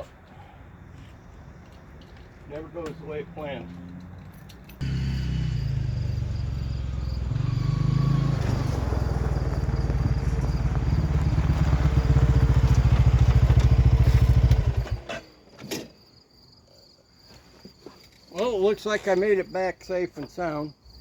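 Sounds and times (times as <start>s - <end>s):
vehicle engine running: 4.8s - 15.0s.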